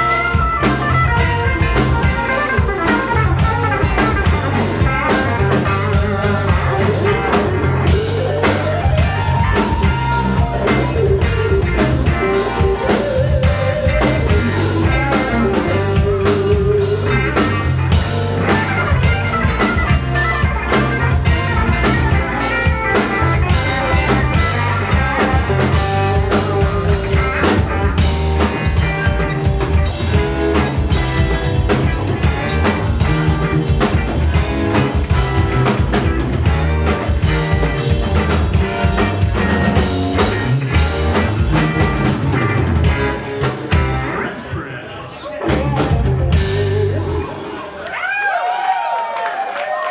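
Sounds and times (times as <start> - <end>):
drum kit beat: 0.0 - 44.2, 45.4 - 47.1
sliding electric guitar lines: 0.0 - 47.8.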